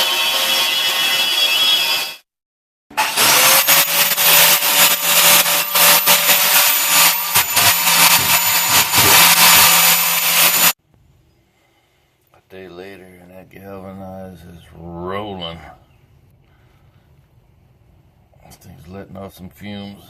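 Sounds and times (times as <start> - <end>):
angle grinder cutting steel: 0.0 - 2.2, 2.9 - 10.8.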